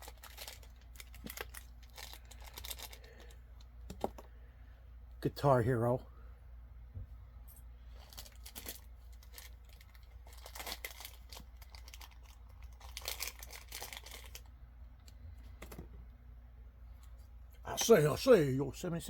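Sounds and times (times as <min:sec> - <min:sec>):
plastic packaging crinkling: 0:00.0 - 0:04.2, 0:07.9 - 0:14.5
faint low hum: 0:00.0 - 0:19.0.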